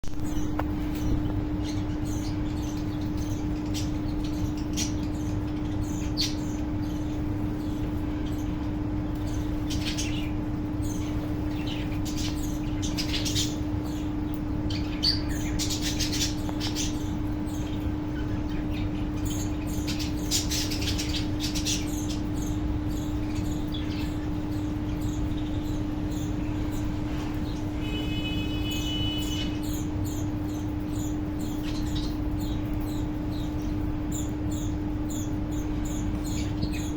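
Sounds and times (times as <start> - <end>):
birds chirping: 0.0 - 36.9.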